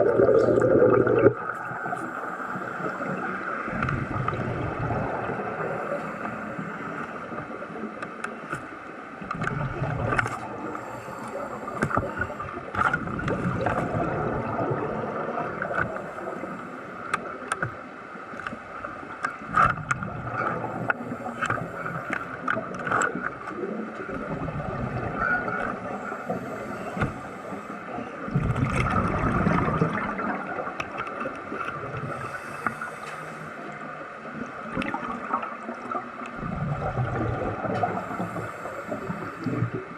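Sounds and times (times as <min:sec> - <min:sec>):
underwater bubbling and gurgling: 0:00.0 - 0:39.9
clicks and crackles: 0:08.0 - 0:10.5, 0:17.1 - 0:24.3.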